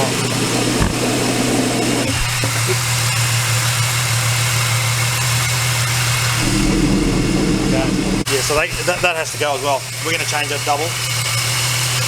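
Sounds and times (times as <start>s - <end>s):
pulley bearing hum and rushing: 6.0s - 10.0s
car engine idling: 6.2s - 10.0s.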